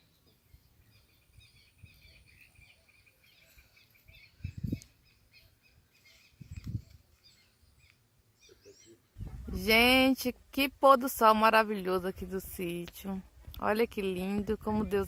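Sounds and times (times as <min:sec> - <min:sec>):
small birds chirping: 0:00.0 - 0:09.9.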